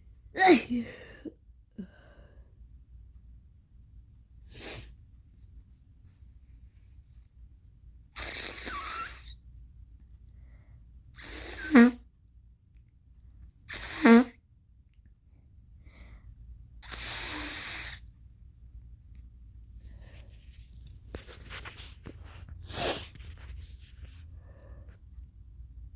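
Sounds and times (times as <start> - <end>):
person sneezing: 0.4 - 1.3, 13.7 - 14.4.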